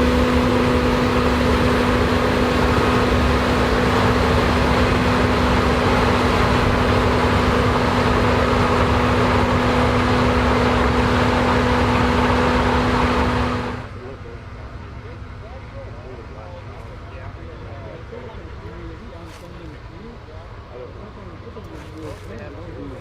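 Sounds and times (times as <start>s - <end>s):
harvesting machinery engine drone: 0.0s - 23.0s.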